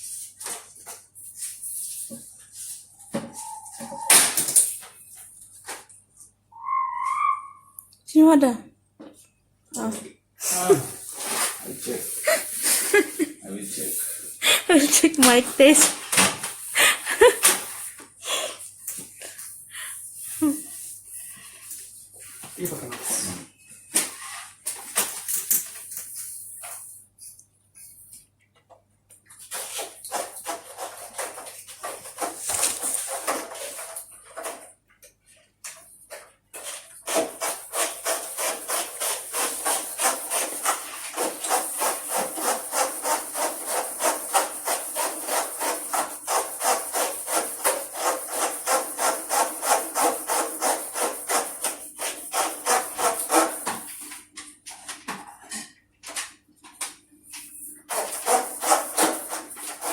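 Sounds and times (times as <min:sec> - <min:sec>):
brush scrubbing: 0:10.7 - 0:16.0, 0:16.7 - 0:18.0, 0:36.6 - 0:54.2, 0:57.8 - 0:59.9.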